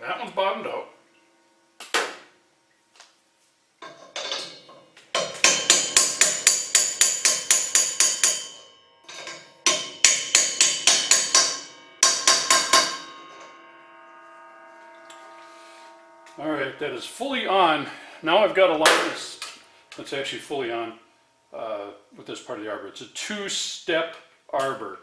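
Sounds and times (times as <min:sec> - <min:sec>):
hammer striking metal: 0:03.8 - 0:21.2
metal ringing: 0:03.8 - 0:22.1.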